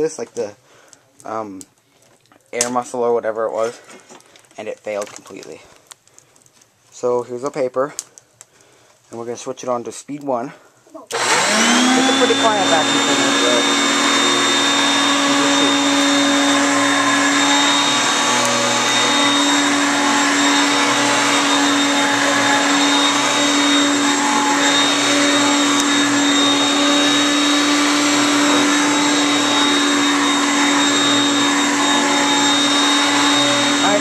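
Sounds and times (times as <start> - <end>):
vacuum cleaner running: 11.1 - 34.0.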